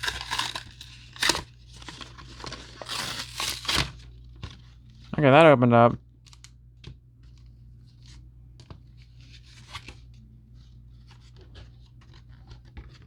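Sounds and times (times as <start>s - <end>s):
plastic blister pack crinkling: 0.0s - 4.0s.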